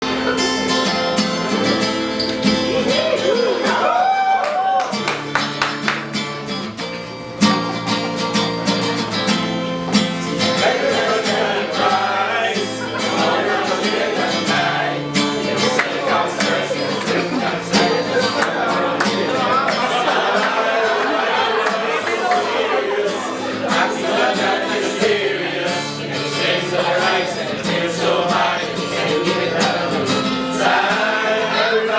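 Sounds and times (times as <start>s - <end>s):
strummed guitar: 0.0s - 31.9s
person singing: 10.4s - 31.9s.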